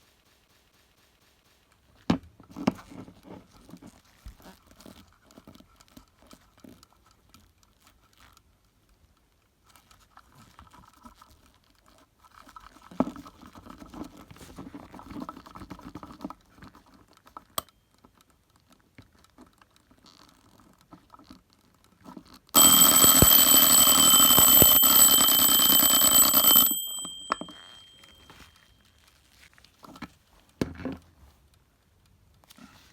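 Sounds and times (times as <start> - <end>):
clock alarm ringing: 22.6 - 28.6.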